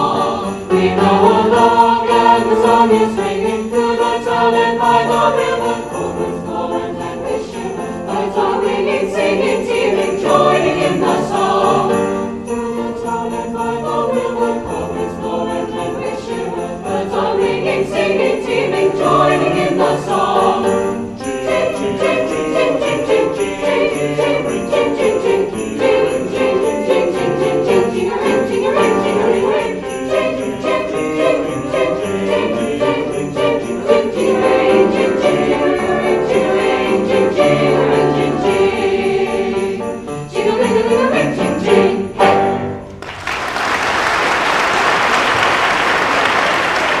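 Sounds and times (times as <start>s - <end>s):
sleigh bells jingling: 0.0s - 42.6s
choir and ensemble singing: 0.0s - 47.0s
audience applauding: 42.9s - 47.0s.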